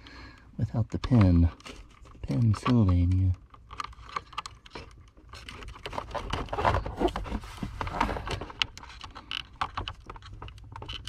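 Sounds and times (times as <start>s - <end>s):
plastic clicks and scraping: 0.7s - 11.0s.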